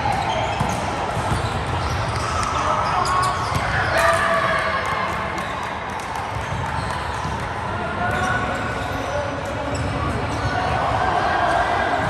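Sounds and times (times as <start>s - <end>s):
volleyball hits and bounces: 0.4s - 2.6s, 3.3s - 9.1s.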